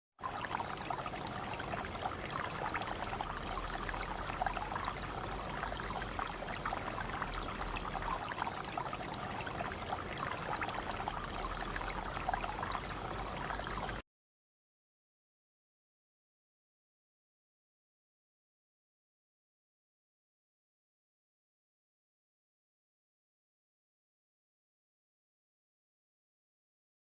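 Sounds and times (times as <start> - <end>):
stream water babbling: 0.2 - 14.0.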